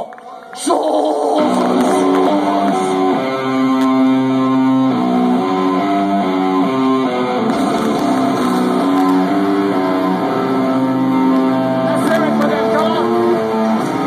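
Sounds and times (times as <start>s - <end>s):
electric guitar melodic line: 1.2s - 14.0s.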